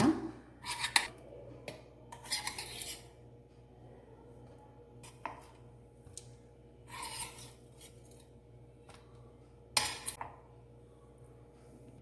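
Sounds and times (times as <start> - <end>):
scraping rub: 6.9 - 8.1.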